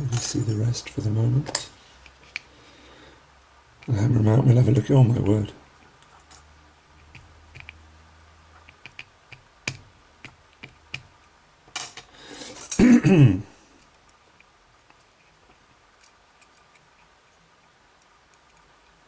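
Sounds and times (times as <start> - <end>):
man's wordless voiced sound: 3.9 - 5.6
small metallic clicks and taps: 7.0 - 11.1.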